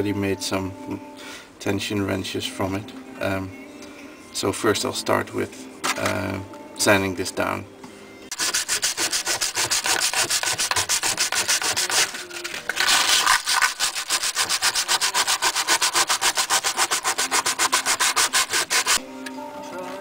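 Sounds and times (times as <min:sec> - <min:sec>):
sandpaper rubbing on steel blade: 0:08.3 - 0:19.0.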